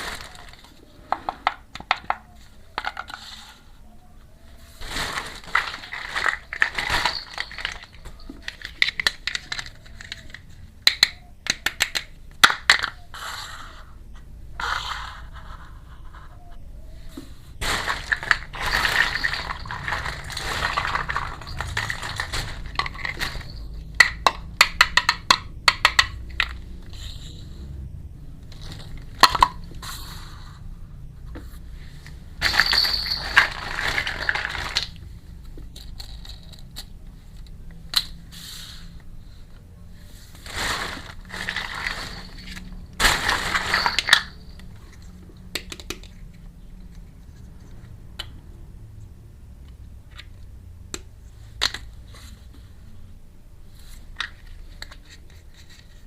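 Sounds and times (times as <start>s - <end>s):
plastic packaging crinkling: 0.0s - 0.8s, 4.7s - 10.5s, 17.5s - 24.0s, 32.4s - 35.1s, 40.3s - 45.7s
small toy pieces clicking: 5.4s - 13.0s, 17.8s - 26.9s, 32.4s - 38.2s.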